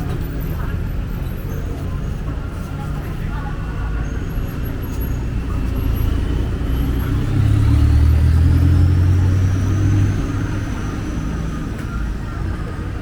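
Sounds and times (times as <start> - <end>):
traffic noise: 0.0 - 13.0
vehicle engine rumble passing: 3.7 - 13.0.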